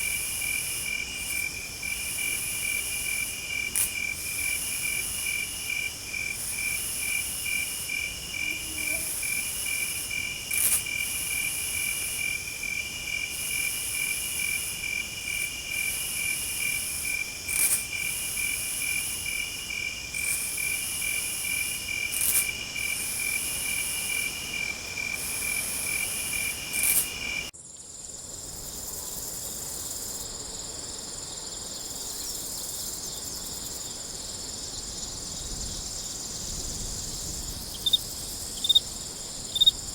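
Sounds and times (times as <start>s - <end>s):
insect buzzing calls: 0.0s - 27.5s, 34.7s - 39.9s
high insect drone: 0.0s - 39.9s
insects chirping in chorus: 0.0s - 39.9s.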